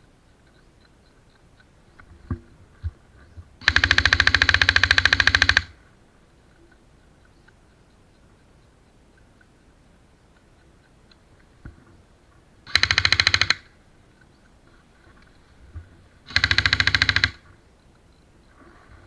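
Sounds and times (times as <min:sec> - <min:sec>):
airsoft gun full-auto bursts: 0:03.6 - 0:05.8, 0:12.6 - 0:13.8, 0:16.2 - 0:17.4.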